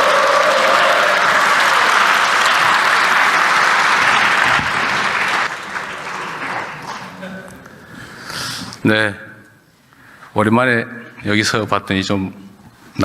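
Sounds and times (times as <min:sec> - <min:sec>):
audience applauding: 0:00.0 - 0:07.6.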